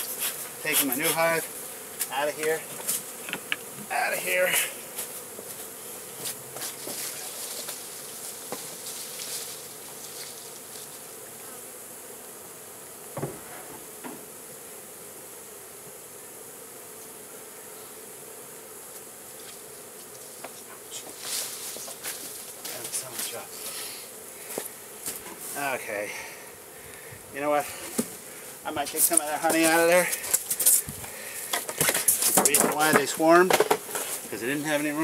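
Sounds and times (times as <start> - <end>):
bees buzzing: 0.0 - 35.0
knock: 13.2 - 14.2.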